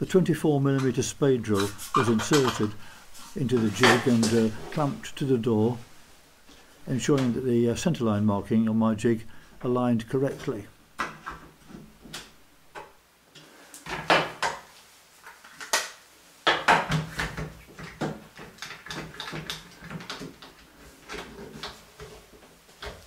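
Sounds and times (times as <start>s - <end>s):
hard objects knocking and clicking: 1.6s - 2.8s, 16.4s - 22.2s.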